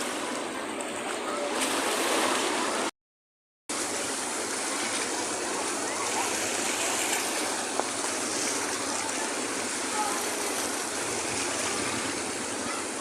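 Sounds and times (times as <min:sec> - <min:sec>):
sea surf washing onto shore: 0:03.7 - 0:13.0.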